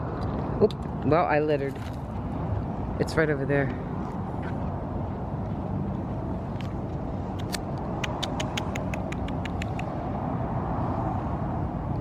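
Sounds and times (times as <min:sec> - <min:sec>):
vehicle low rumble: 0:00.0 - 0:12.0
sharp ticks: 0:07.4 - 0:09.9.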